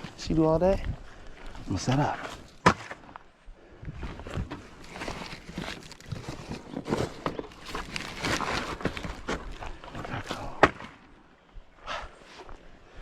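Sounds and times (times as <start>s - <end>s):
camping gear rustling and knocking: 0.0s - 11.3s.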